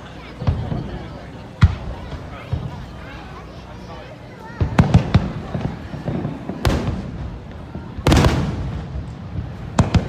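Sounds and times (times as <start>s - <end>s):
fireworks bursting: 4.6s - 10.0s.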